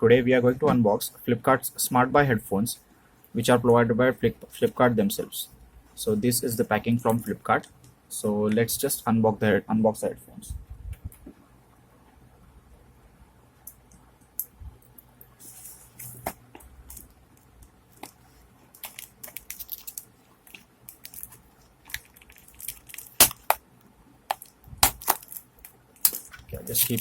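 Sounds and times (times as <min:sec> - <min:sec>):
packaging rustling: 0:17.9 - 0:23.6, 0:24.3 - 0:27.0
packaging clicks and knocks: 0:20.9 - 0:23.6, 0:24.3 - 0:27.0.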